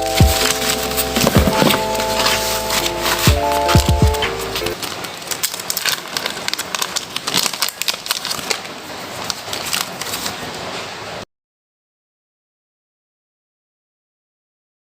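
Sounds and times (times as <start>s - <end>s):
plastic packaging crinkling: 0.0s - 10.8s.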